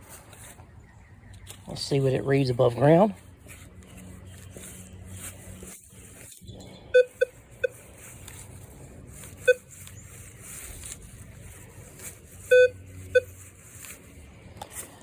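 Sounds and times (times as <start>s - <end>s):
metal detector low beeps: 6.9s - 7.8s, 9.4s - 9.7s, 12.5s - 13.4s.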